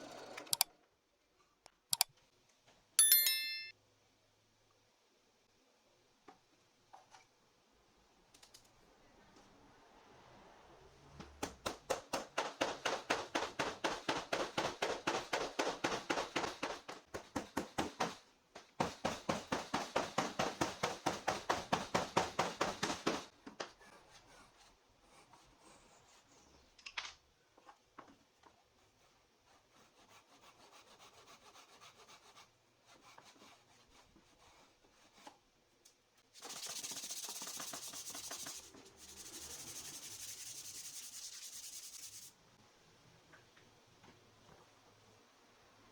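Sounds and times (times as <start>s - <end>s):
rubbing strokes on wood: 36.4s - 42.3s.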